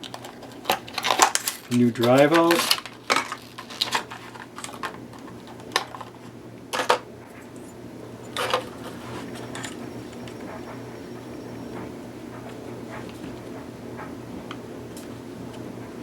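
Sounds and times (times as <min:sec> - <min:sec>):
small hard parts clicking: 0:00.0 - 0:07.0
faint steady hum: 0:00.0 - 0:16.0.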